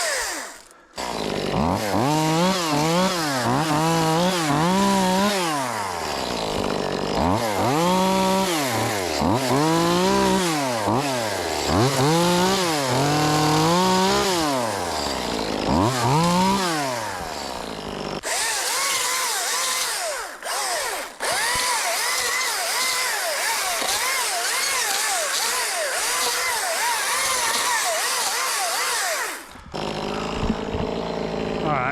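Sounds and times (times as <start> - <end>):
chainsaw cutting wood: 0.0 - 31.9.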